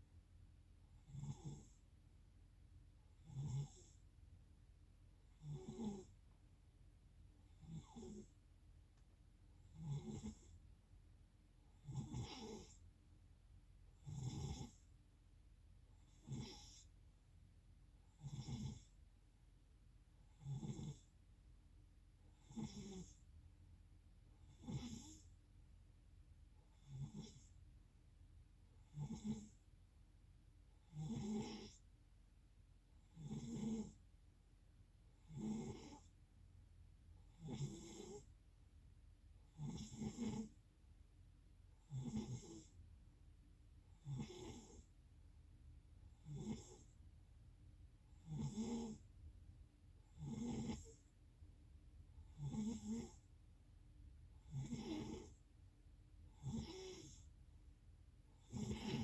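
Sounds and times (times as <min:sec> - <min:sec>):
person snoring: 0:58.4 - 0:59.0.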